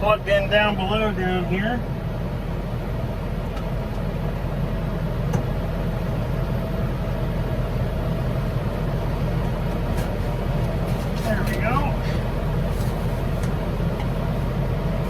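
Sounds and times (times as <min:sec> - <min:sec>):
tractor engine idling: 0:00.0 - 0:15.0.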